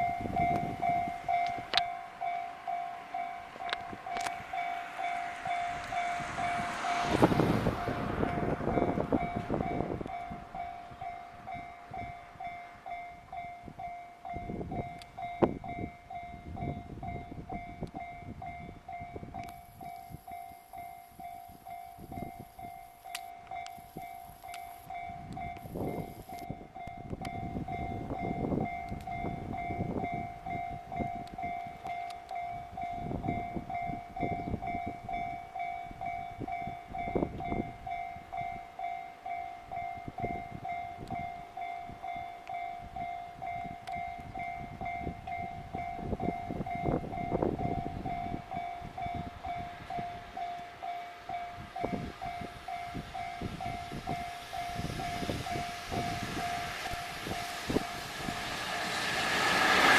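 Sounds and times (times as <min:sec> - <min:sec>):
train wheels clattering on rails: 0:51.3 - 0:59.9.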